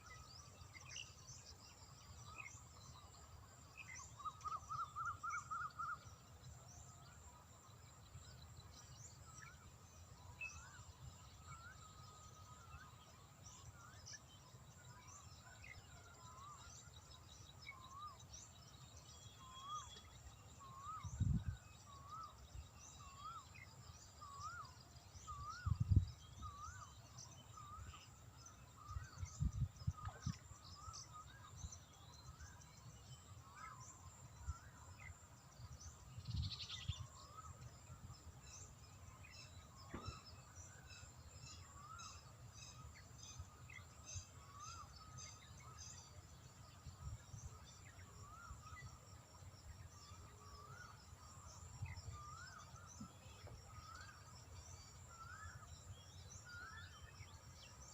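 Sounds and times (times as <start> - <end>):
bird chirping: 0.0 - 57.9
faint high insect whine: 0.0 - 57.9
low thumps on microphone: 39.8 - 40.3.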